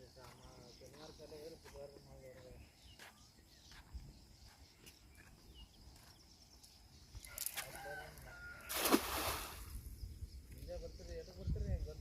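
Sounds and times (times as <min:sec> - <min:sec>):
rooster crowing: 0:07.3 - 0:08.7.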